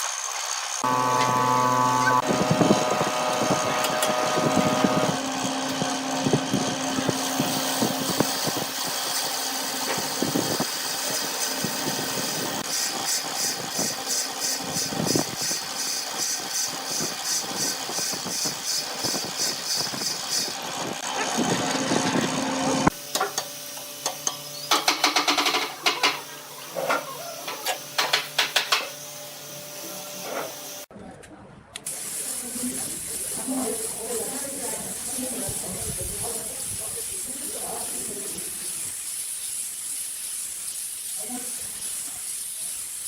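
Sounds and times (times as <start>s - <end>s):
tools cutting wood: 0.0s - 12.0s
woodworking machine motor hum: 0.0s - 30.8s.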